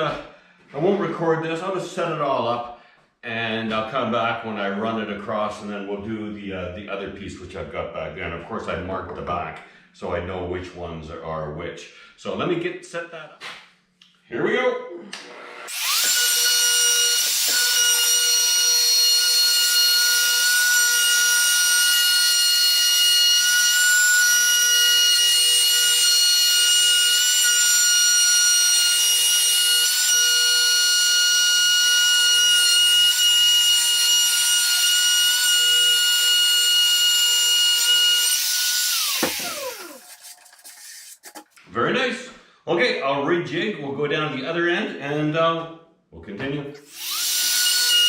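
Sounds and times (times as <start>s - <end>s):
electric router cutting wood: 15.1s - 40.3s, 46.8s - 48.0s.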